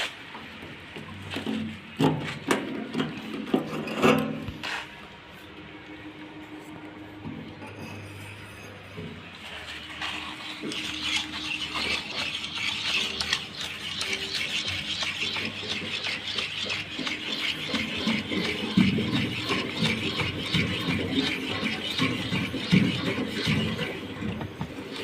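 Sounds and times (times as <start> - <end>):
scraping and crackling in mud: 9.4 - 25.0.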